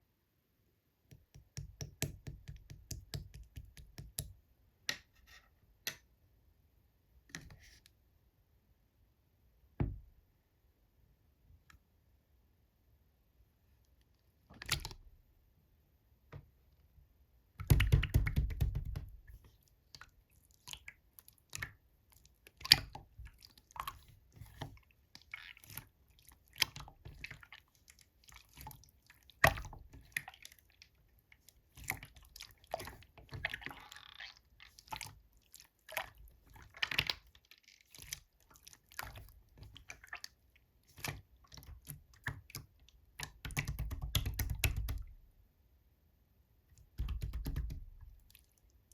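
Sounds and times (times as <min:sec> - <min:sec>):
slime squishing by hand: 0:17.6 - 0:45.3
wet clicks and pops: 0:41.0 - 0:45.2, 0:46.8 - 0:48.4.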